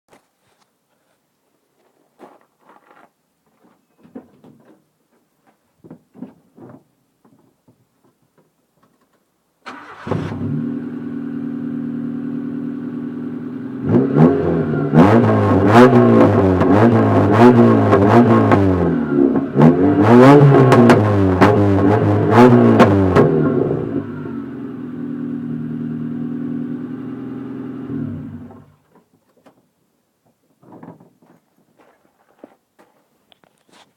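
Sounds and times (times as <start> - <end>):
faint rustling: 28.8 - 33.9.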